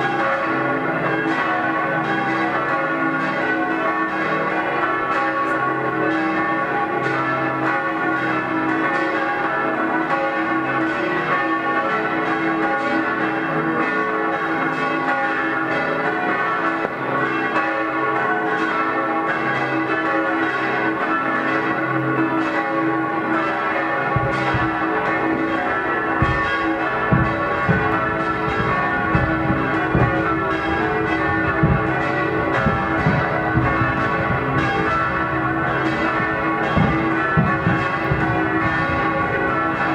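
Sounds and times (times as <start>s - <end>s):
church bells ringing: 0.0s - 39.9s
fireworks bangs: 24.0s - 39.9s.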